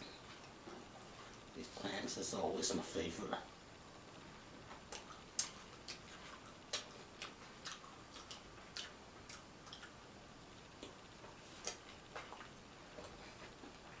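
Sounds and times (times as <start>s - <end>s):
crunchy chewing: 4.7s - 10.0s.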